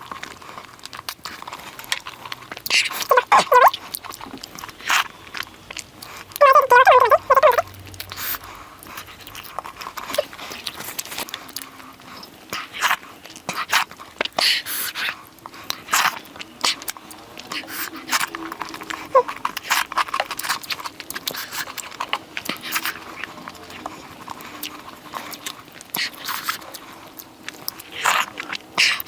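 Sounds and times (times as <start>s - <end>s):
wet chewing: 0.0s - 29.0s
mouth clicks: 2.6s - 5.8s, 6.4s - 8.4s
wavering pitched sound: 6.4s - 7.7s.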